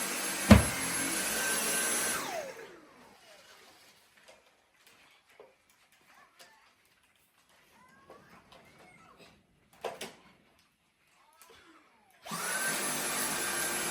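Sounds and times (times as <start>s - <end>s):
sharp knock: 0.5s - 0.9s
vacuum cleaner running: 0.5s - 2.4s, 12.3s - 13.9s.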